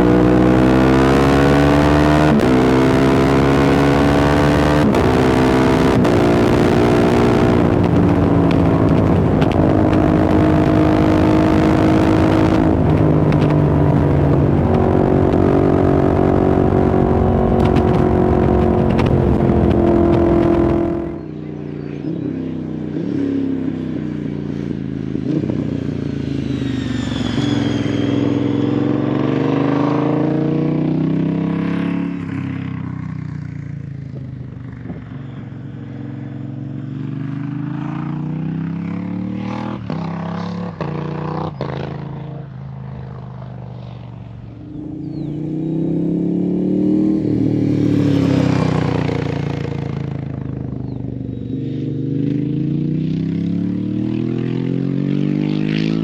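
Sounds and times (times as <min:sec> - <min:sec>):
motorcycle engine revving: 0:00.0 - 0:56.0
sharp exhaust cracks: 0:04.8 - 0:21.3.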